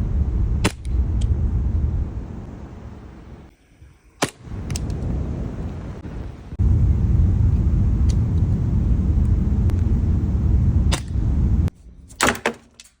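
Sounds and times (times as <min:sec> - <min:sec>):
loud low rumble: 0:00.0 - 0:03.5, 0:06.6 - 0:11.7.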